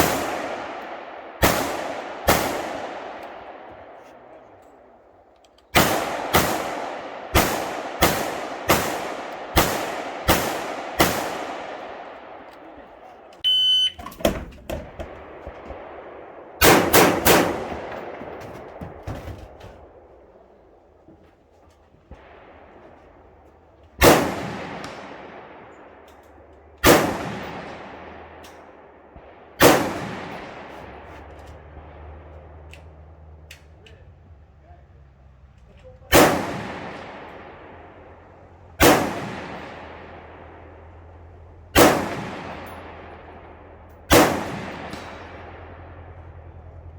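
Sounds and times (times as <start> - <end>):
rifle shots echoing: 0.0 - 13.9, 14.8 - 18.9, 24.0 - 32.7, 36.1 - 46.8
high ringing tone: 13.4 - 14.2.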